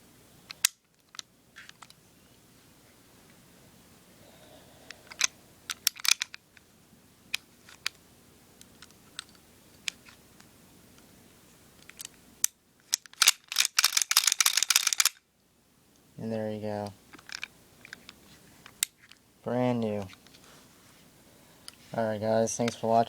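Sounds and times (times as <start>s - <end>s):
pistol parts clicking together: 0.5s - 2.0s, 5.1s - 6.4s, 11.8s - 15.2s, 16.8s - 19.2s.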